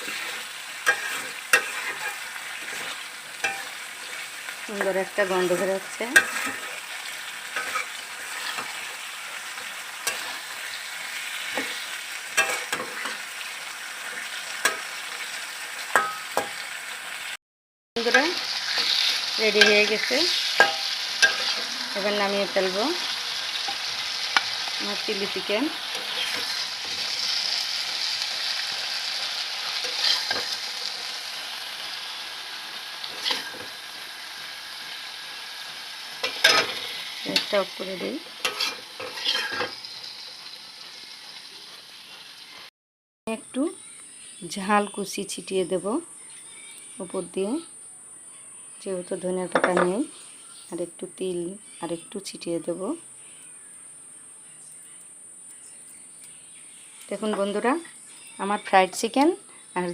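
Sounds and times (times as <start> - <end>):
spatula strokes against pan: 0.0 - 4.4, 7.5 - 9.0, 38.4 - 39.8
utensil scraping pan: 0.0 - 4.4, 5.4 - 6.9, 7.5 - 8.9, 10.0 - 10.5, 18.1 - 22.0, 25.8 - 27.4, 29.8 - 30.6, 33.1 - 33.8, 38.4 - 39.8
chicken sizzling in a pan: 0.0 - 17.4, 18.0 - 42.7, 43.4 - 54.6, 55.8 - 59.9.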